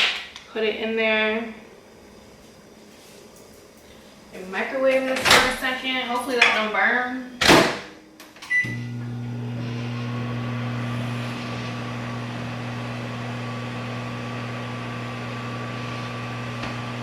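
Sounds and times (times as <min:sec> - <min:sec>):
microwave oven humming: 0:08.0 - 0:17.0.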